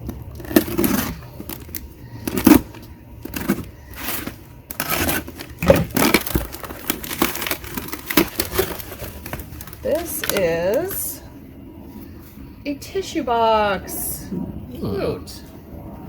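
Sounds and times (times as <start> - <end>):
packaging rustling and crinkling: 0.0 - 11.2.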